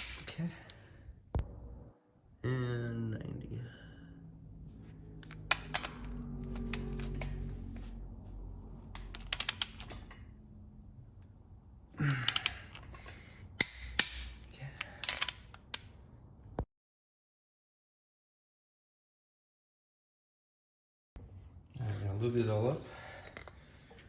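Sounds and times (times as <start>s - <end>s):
metallic tool clicks and clinks: 9.0s - 10.2s, 12.2s - 13.0s, 13.6s - 15.9s.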